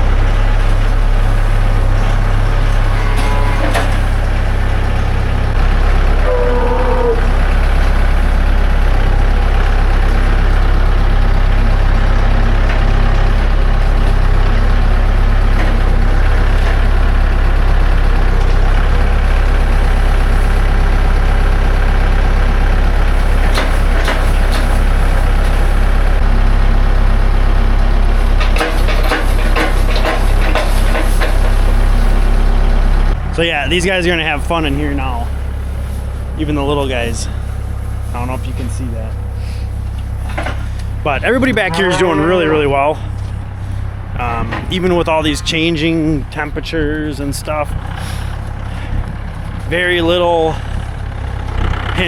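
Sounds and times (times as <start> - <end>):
tractor engine running: 0.0 - 52.0
wavering high note: 2.7 - 4.2, 6.2 - 7.3, 41.3 - 43.0.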